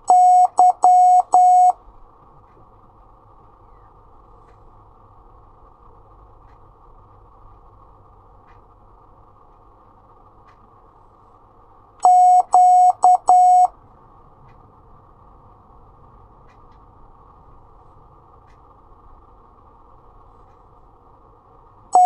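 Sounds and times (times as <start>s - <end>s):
morse code beeps: 0.0s - 1.8s, 12.0s - 13.7s.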